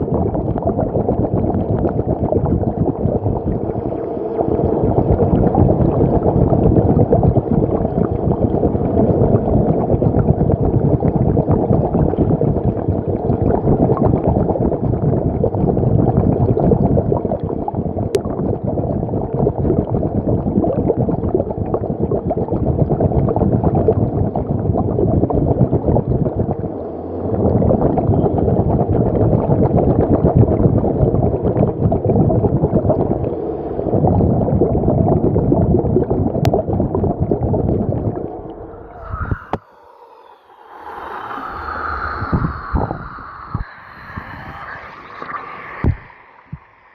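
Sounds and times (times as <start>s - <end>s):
faint steady hum: 0.0s - 46.9s
water churning and gurgling: 0.0s - 46.9s.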